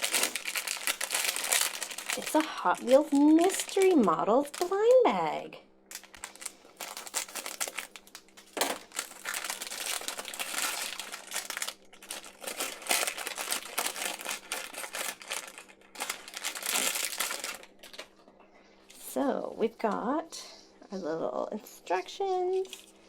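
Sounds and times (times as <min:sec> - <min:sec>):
plastic foil pouch crinkling: 0:00.0 - 0:05.2, 0:05.9 - 0:18.2.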